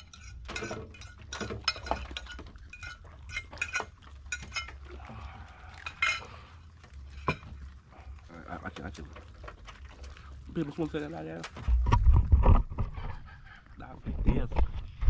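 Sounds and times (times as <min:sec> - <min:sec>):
hard objects clicking and clinking: 0:00.0 - 0:04.8.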